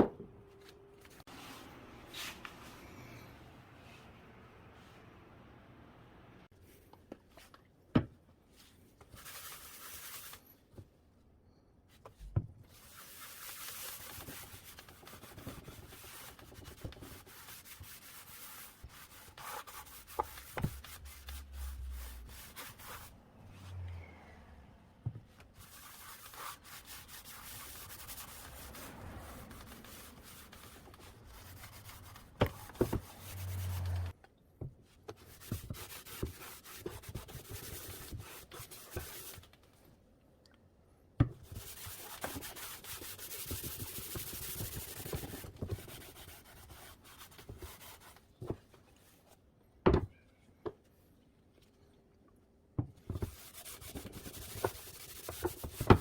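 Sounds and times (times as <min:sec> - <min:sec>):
rubbing on wooden surface: 0:53.2 - 0:56.0.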